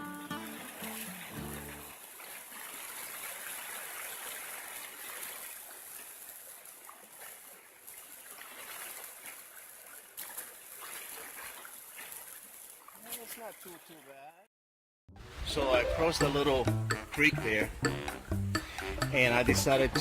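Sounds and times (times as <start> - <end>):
creek water flowing over rocks: 0.0 - 14.0.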